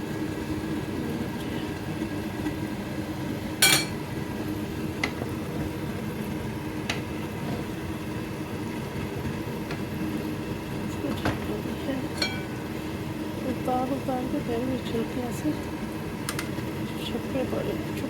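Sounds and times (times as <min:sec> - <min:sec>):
metal utensil clinking on pot: 0:03.6 - 0:04.0, 0:12.2 - 0:12.5.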